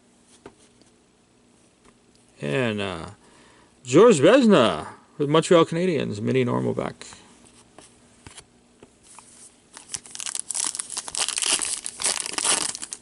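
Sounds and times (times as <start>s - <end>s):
wrapper crinkling and tearing: 9.7s - 13.0s.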